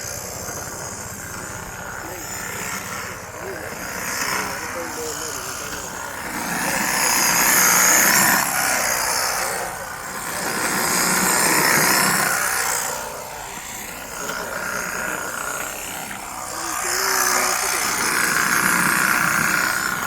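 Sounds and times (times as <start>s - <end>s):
brush cutter running: 0.0s - 20.0s.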